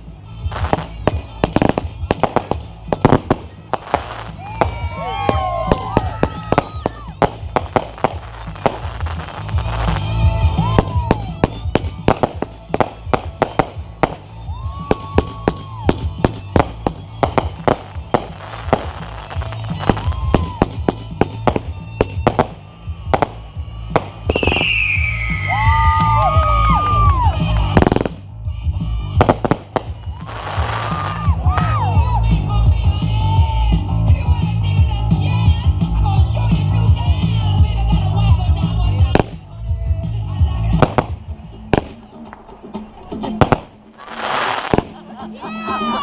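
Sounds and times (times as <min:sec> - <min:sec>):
fireworks crackling and bursting: 0:00.0 - 0:33.2, 0:37.0 - 0:46.0
music: 0:00.0 - 0:46.0
fireworks whistling: 0:00.5 - 0:26.2, 0:29.2 - 0:31.8, 0:40.7 - 0:46.0.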